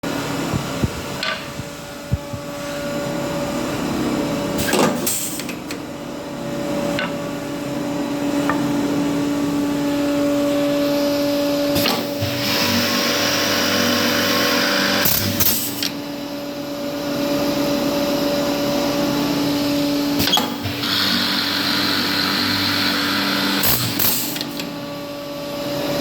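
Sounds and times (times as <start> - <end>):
drilling machine motor hum: 11.4 - 15.4, 18.9 - 24.8.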